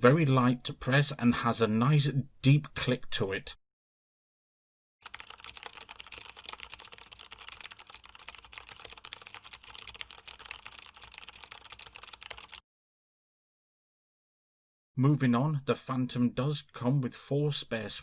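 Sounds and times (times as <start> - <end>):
mechanical keyboard typing: 5.0 - 12.6.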